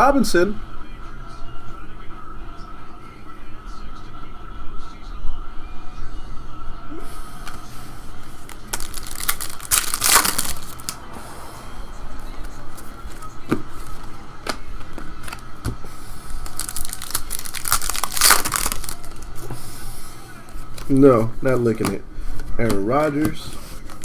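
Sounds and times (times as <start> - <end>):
card pack wrappers crinkling: 8.4 - 11.0, 16.3 - 19.4, 23.6 - 24.0
cards clicking and tapping: 21.7 - 24.0.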